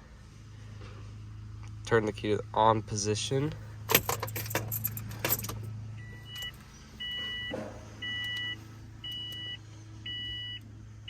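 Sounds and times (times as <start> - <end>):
two-tone electronic beeps: 6.0 - 10.6.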